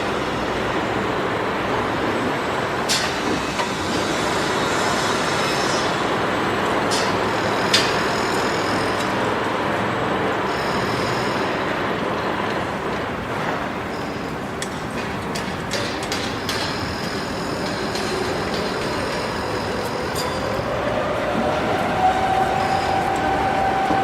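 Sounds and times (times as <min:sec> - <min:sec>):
traffic: 0:00.0 - 0:24.0
heavy machinery din: 0:14.8 - 0:24.0.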